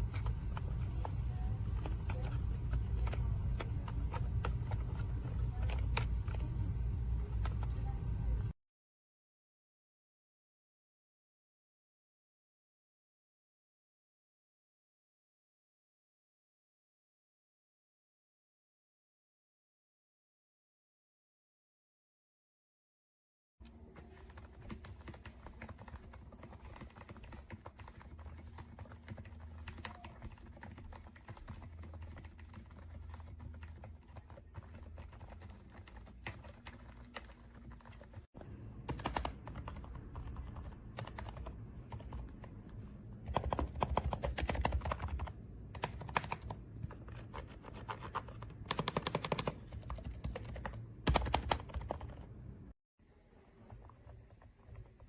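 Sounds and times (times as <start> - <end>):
mechanical keyboard typing: 0.0 - 6.6, 23.8 - 42.5, 43.2 - 52.3.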